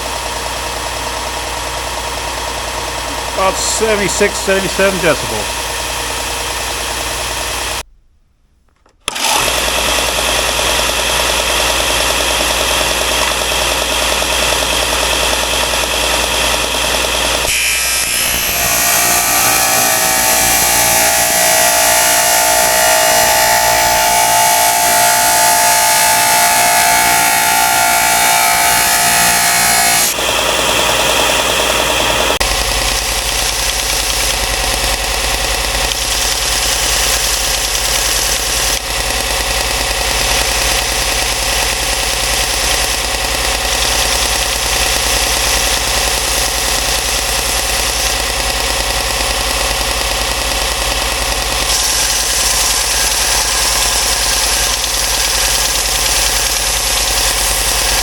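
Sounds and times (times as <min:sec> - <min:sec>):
belt sander running: 0:09.1 - 0:58.0
hissing grinding with whine: 0:17.6 - 0:48.9.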